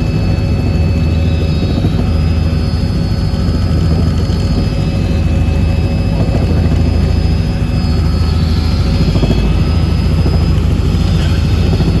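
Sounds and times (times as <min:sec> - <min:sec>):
helicopter engine and rotor drone: 0:00.0 - 0:12.0.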